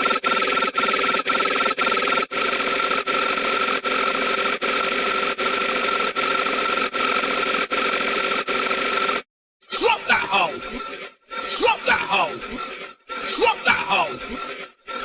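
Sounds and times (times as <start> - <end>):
harsh noisy sound effect: 9.7 - 15.0.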